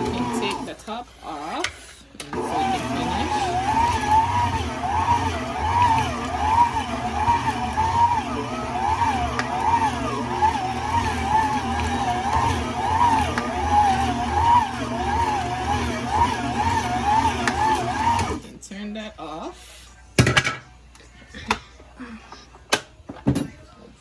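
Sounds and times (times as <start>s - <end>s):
kitchen machine motor whining: 0.0s - 18.5s.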